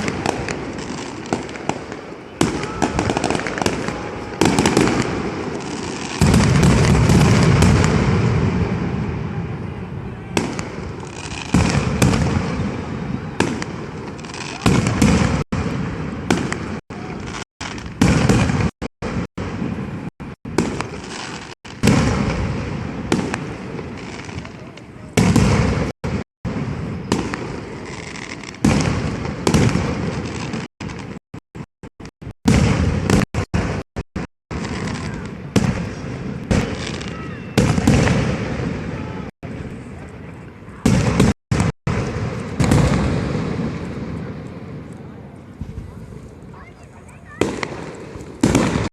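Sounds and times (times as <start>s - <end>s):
echoing gunpowder bangs: 0.0s - 8.9s, 10.4s - 24.1s, 32.4s - 33.8s, 40.8s - 44.3s, 47.4s - 48.9s
street din: 0.0s - 48.9s
gunpowder bangs with echo: 47.4s - 48.9s.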